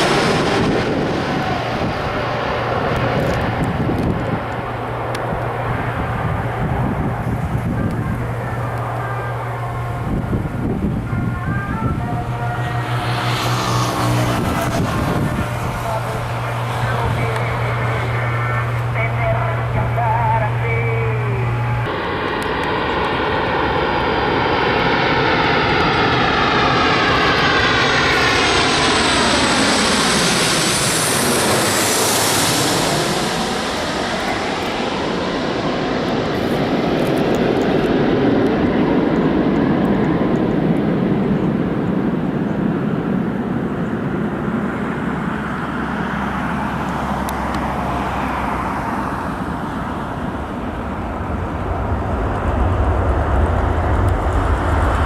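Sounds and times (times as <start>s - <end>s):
jet airliner passing overhead: 0.0s - 55.0s.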